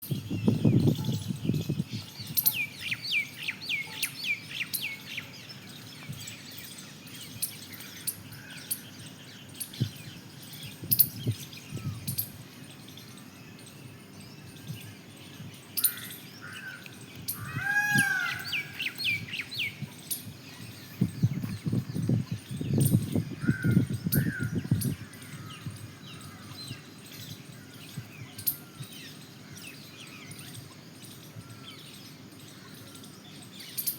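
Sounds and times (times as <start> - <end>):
birds chirping: 0.0 - 33.9.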